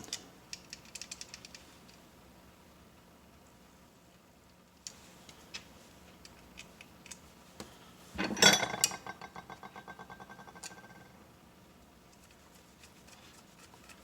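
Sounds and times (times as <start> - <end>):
small part rattling to rest: 8.2 - 11.1.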